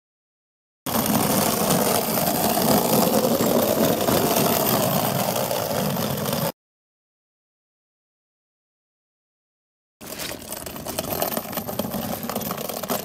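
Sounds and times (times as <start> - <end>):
suitcase wheels rolling: 0.9 - 6.5, 10.0 - 13.0.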